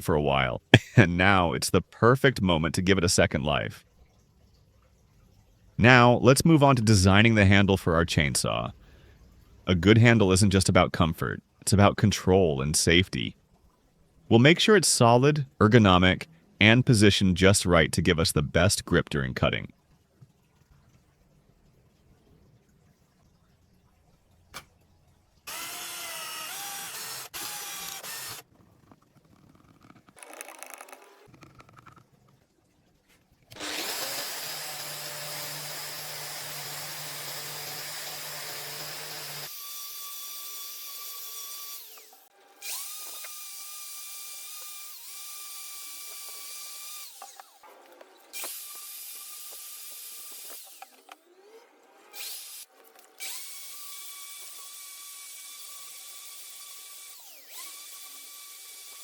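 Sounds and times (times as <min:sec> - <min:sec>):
electric drill whining: 0:25.5 - 0:28.4, 0:29.4 - 0:32.0, 0:33.5 - 0:47.6, 0:48.3 - 0:51.2, 0:52.1 - 0:59.0
harsh cutting noise: 0:25.5 - 0:32.0, 0:33.5 - 0:39.6.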